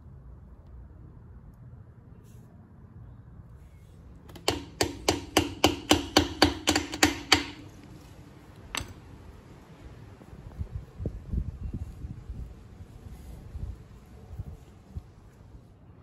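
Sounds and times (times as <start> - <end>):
hammer tapping metal: 4.3 - 7.9, 8.7 - 9.0.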